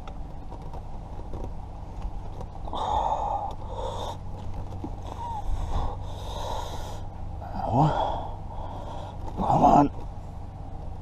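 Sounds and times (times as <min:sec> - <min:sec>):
person breathing hard: 0:02.7 - 0:04.3, 0:05.0 - 0:09.4.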